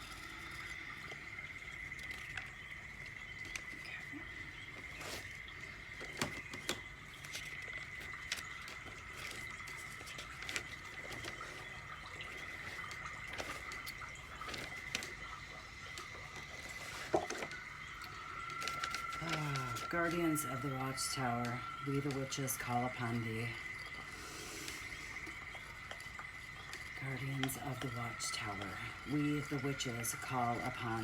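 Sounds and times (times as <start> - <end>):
low hum: 14.0 - 31.0
high-pitched whine: 14.9 - 31.0.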